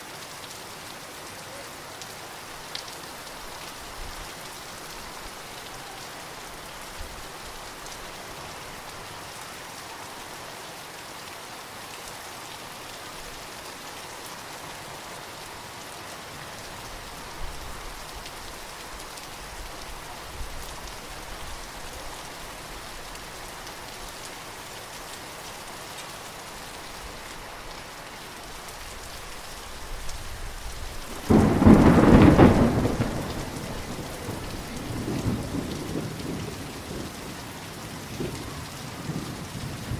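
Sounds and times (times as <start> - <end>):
steady rain: 0.0 - 39.9
loud thunderclap: 31.1 - 37.0
thunder rumbling: 31.1 - 37.2.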